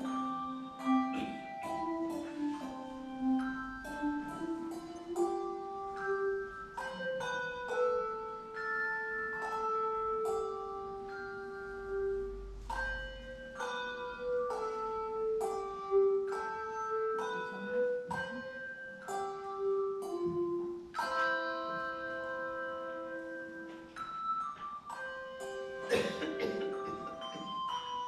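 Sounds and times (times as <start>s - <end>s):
handbells ringing melody: 0.0s - 28.0s.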